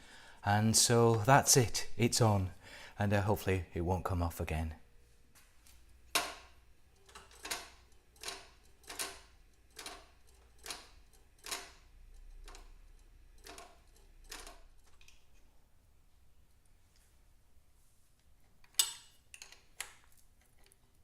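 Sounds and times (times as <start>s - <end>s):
kickstarter lever clacking: 6.1s - 11.8s, 13.4s - 15.2s.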